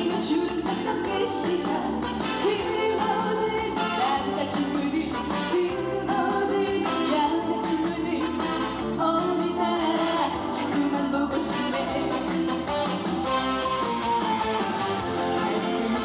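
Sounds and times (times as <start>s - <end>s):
woman singing through pa: 0.0s - 12.5s
amplified musical accompaniment: 1.6s - 16.0s.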